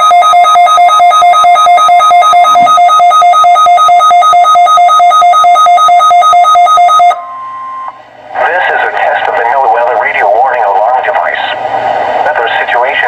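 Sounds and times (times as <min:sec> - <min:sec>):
two-pitch alert beeping: 0:00.0 - 0:08.0.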